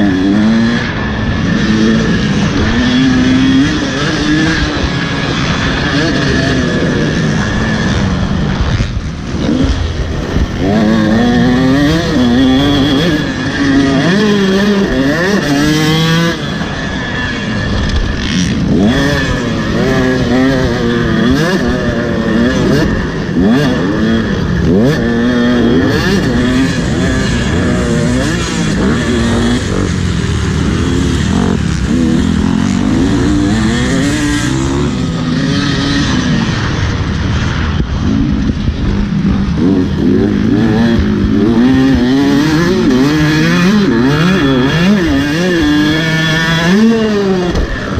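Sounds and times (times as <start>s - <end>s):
motocross bike engine revving: 0.0s - 47.9s.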